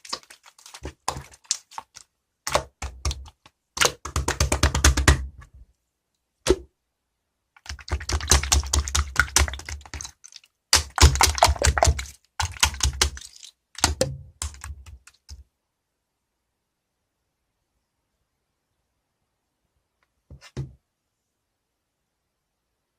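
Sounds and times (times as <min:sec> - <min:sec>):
slime kneaded by hand popping: 0:00.0 - 0:05.4, 0:07.6 - 0:15.4.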